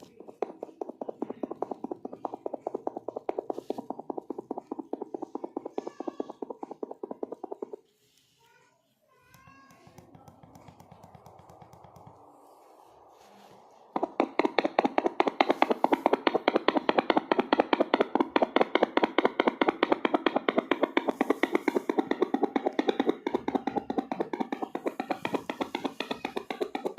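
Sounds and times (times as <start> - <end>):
fetal doppler heartbeat pulsing: 0.0 - 7.9, 13.8 - 26.9.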